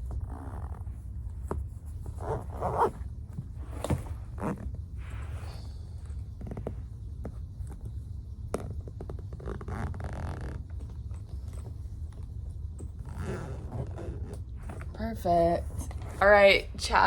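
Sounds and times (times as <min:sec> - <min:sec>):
low steady rumble: 0:00.0 - 0:17.0
suitcase zipper drawn: 0:02.2 - 0:03.0, 0:09.4 - 0:10.6, 0:13.0 - 0:14.8.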